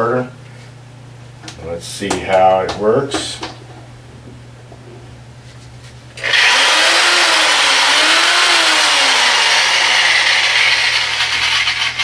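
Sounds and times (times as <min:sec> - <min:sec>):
electric power tool running: 0:06.2 - 0:12.0.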